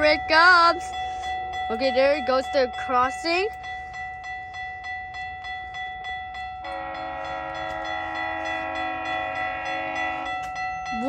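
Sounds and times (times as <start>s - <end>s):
level crossing bell ringing: 0.0s - 11.0s
train horn: 6.6s - 11.0s.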